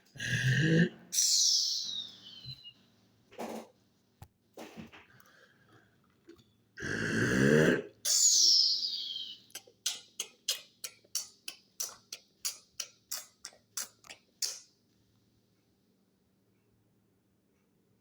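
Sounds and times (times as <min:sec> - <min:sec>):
throaty voiced mouth sound: 0:00.0 - 0:01.2, 0:06.8 - 0:08.4, 0:09.4 - 0:14.6
mouth hissing: 0:08.0 - 0:14.6.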